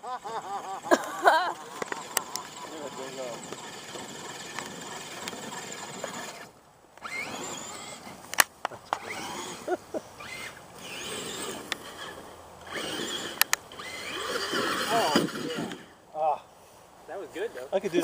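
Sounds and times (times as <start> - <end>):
electric motor whining: 1.5 - 8.2, 8.9 - 16.0.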